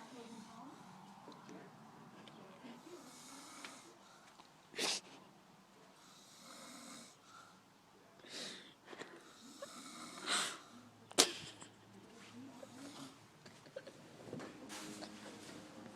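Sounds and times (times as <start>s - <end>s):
woman snoring: 2.8s - 4.0s, 6.1s - 7.2s, 9.2s - 10.8s.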